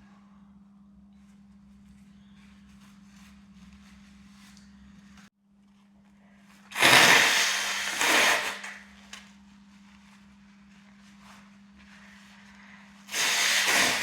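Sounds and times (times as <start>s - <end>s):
person blowing nose: 6.7s - 8.9s, 13.1s - 14.0s.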